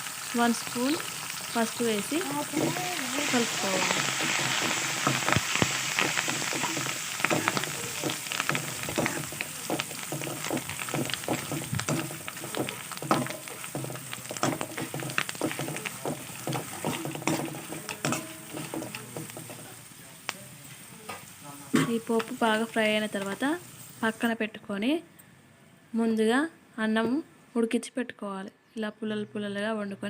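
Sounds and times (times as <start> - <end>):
oil sizzling in pan: 0.0 - 24.4
spoon clicking and scraping pan: 2.2 - 19.8.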